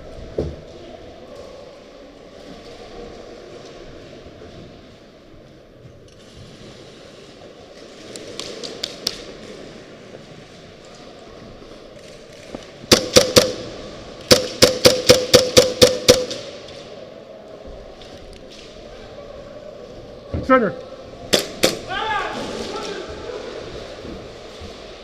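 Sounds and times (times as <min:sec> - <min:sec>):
airsoft gun shots: 0:12.9 - 0:13.7, 0:14.3 - 0:16.6
distant airsoft gun shots: 0:12.9 - 0:13.7, 0:14.3 - 0:16.6.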